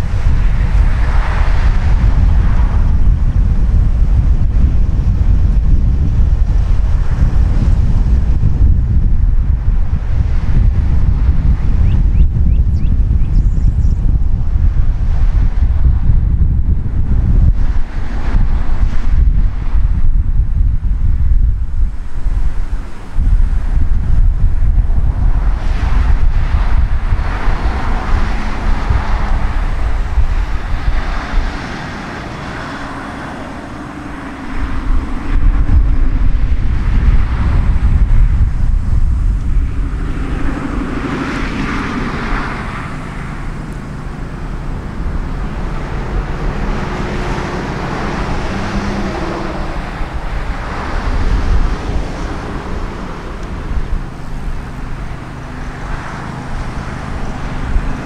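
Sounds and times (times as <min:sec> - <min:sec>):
diesel locomotive engine running: 0:00.0 - 0:58.0
wind buffeting microphone: 0:00.0 - 0:58.0.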